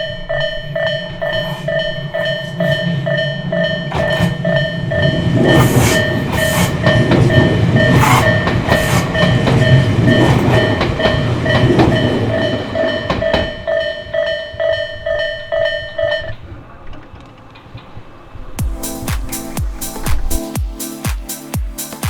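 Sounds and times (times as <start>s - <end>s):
level-crossing alarm bell ringing: 0.0s - 16.6s
train wheels clicking over rail joints: 0.0s - 20.5s
train rumble: 0.0s - 20.8s.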